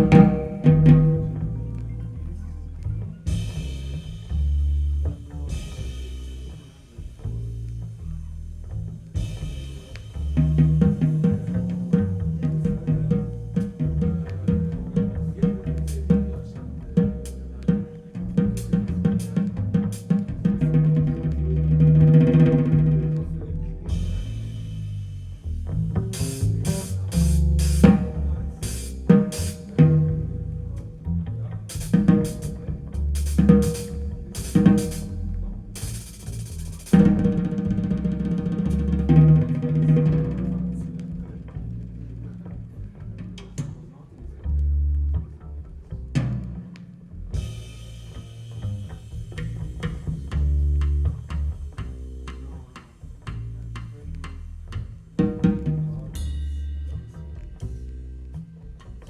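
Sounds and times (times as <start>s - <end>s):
sharp percussion hits: 0.0s - 1.5s
deep plucked bass line: 0.0s - 59.0s.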